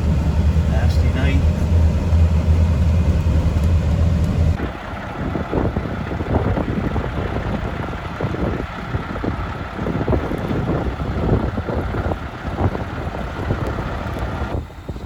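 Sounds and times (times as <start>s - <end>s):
truck engine droning: 0.0s - 15.0s
wind noise on microphone: 0.0s - 15.0s.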